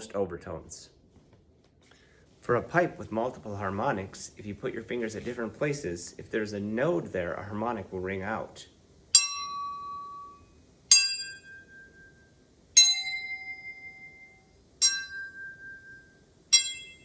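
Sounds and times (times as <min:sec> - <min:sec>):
pipe struck ringing: 0:09.2 - 0:12.2, 0:12.8 - 0:17.0.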